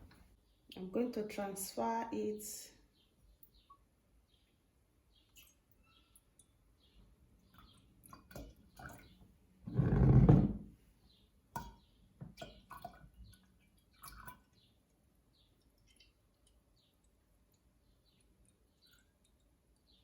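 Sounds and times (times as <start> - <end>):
milk splashing into jar: 11.6 - 14.6.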